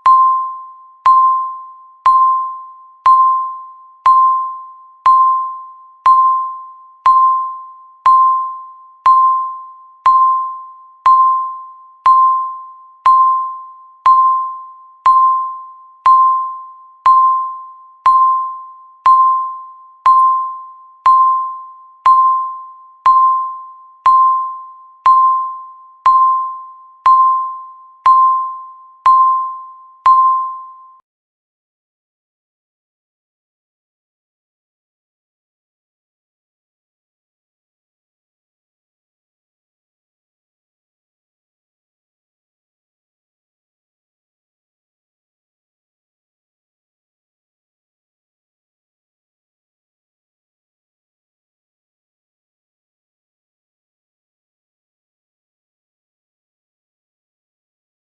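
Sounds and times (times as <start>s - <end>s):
electronic timer beeps: 0.0s - 31.0s.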